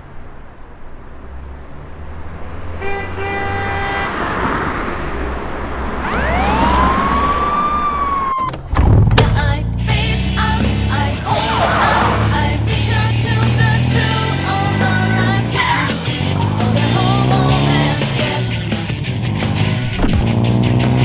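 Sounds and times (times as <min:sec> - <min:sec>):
low vehicle rumble: 0:00.0 - 0:21.0
car horn honking: 0:02.7 - 0:07.4
police siren wailing: 0:05.9 - 0:08.7.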